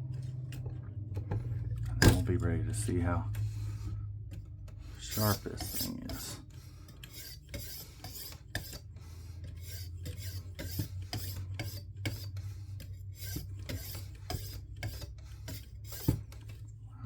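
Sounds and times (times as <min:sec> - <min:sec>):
low hum: 0:00.0 - 0:07.4
sharpening stone rasping on knife: 0:04.9 - 0:16.2.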